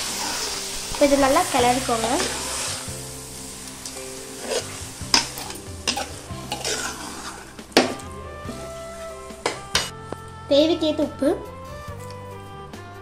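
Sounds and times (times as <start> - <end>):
meat sizzling in hot oil: 0.0 - 9.9
spoon scraping and knocking pot: 4.4 - 8.1, 9.4 - 10.0.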